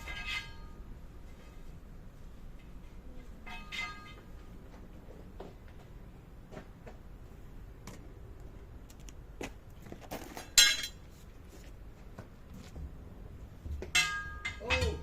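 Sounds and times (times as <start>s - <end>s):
loud ringing metallic clink: 0.0s - 0.9s, 3.4s - 4.3s, 13.9s - 15.0s.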